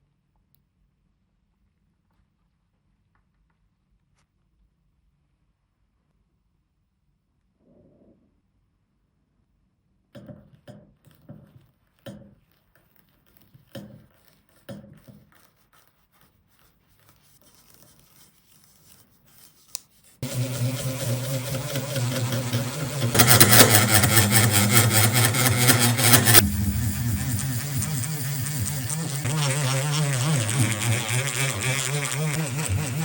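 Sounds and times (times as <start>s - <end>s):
faint rubbing: 12.4s - 33.0s
small electric tool running: 20.2s - 33.0s.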